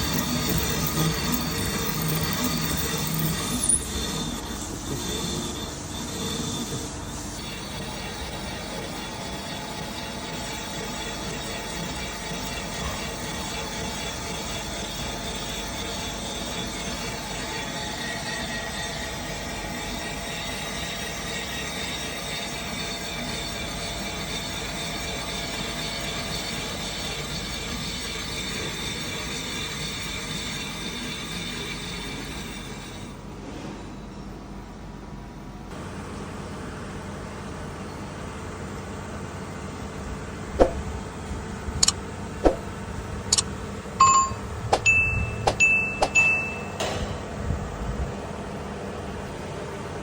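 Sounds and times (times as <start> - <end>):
thin high whine: 0.0 - 18.2, 44.0 - 48.0
machine tool running: 0.0 - 33.1.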